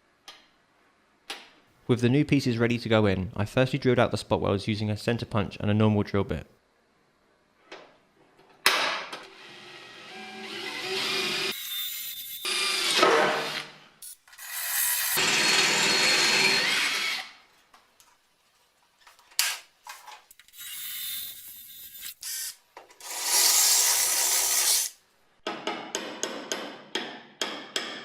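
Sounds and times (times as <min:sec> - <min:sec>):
electric drill boring steel: 0:09.4 - 0:11.6, 0:14.4 - 0:17.4
hammer strikes on metal: 0:25.5 - 0:28.0.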